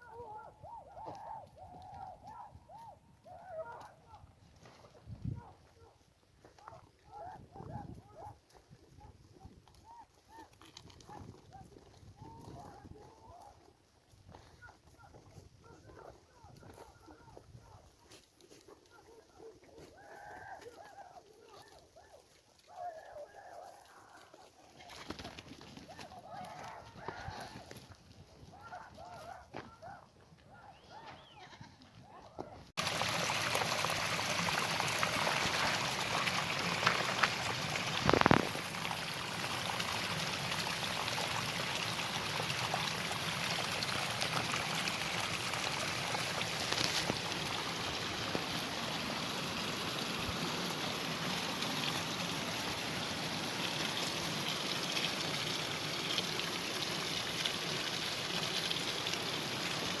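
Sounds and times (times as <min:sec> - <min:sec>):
stream water rushing: 0:32.8 - 1:00.0.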